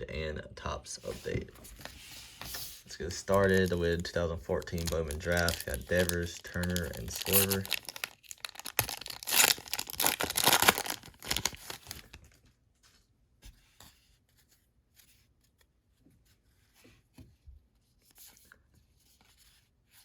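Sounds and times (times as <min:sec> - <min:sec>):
wrapper tearing and crinkling: 0:04.5 - 0:12.2.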